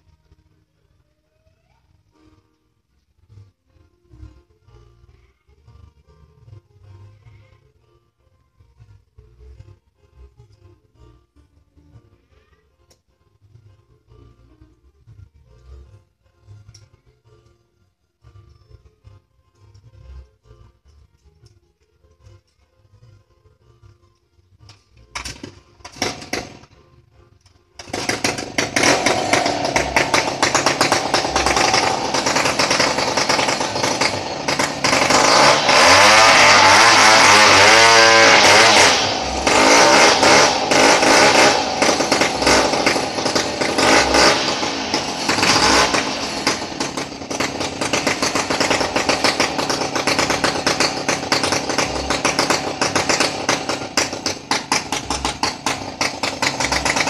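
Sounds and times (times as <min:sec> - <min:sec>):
chainsaw running at high revs: 0:25.9 - 0:26.7, 0:27.8 - 0:57.0.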